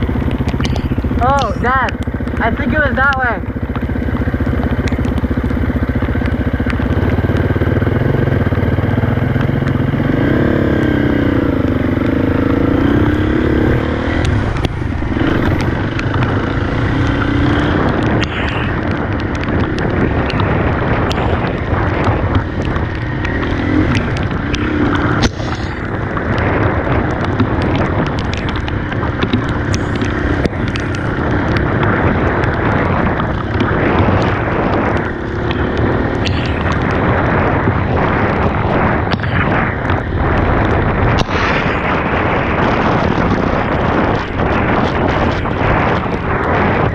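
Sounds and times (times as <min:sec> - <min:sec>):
dirt bike engine revving: 0:00.0 - 0:46.9
clicks and rattles: 0:00.1 - 0:03.9, 0:14.1 - 0:37.2.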